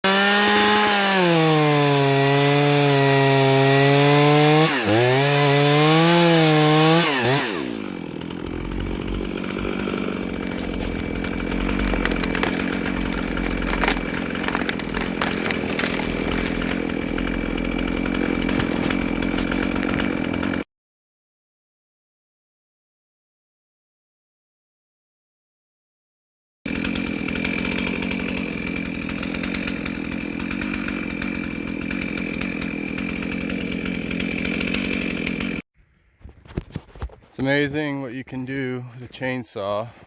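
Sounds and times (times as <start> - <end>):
chainsaw revving and idling: 0.0 - 20.7, 26.7 - 35.7
scattered crackles: 10.5 - 16.8.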